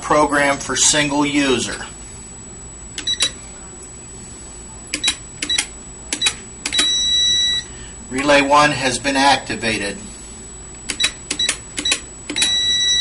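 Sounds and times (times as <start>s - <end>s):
long steady beep: 3.0s - 3.4s, 5.0s - 7.9s, 10.9s - 13.0s
keypad buttons clicking: 10.9s - 12.6s.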